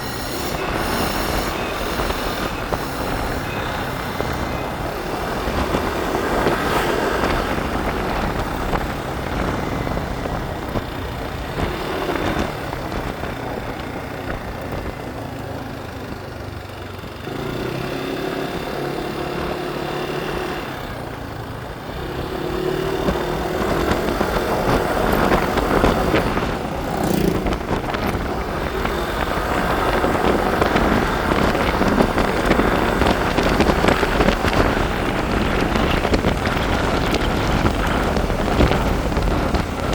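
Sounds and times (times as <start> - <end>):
motorbike engine: 0.0 - 39.9
road and wind noise: 0.0 - 39.9.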